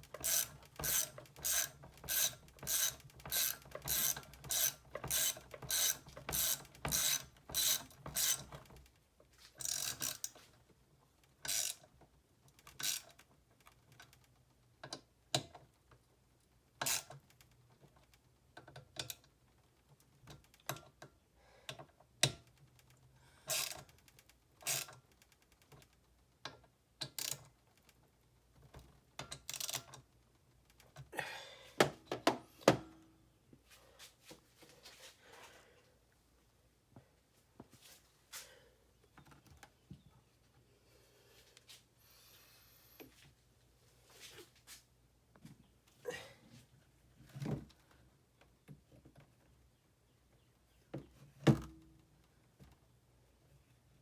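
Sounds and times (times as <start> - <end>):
ratchet tool clicking: 0.1 - 8.5, 11.5 - 11.8, 23.5 - 23.9.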